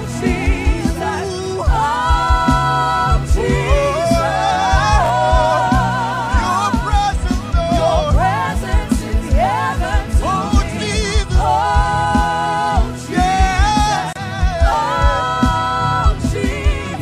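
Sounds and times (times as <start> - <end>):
fast pulsing low beat: 0.0 - 17.0.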